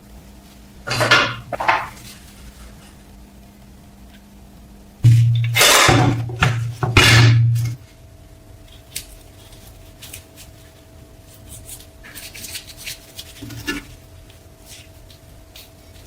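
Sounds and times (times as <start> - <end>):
loud humming noise: 0.0 - 8.6.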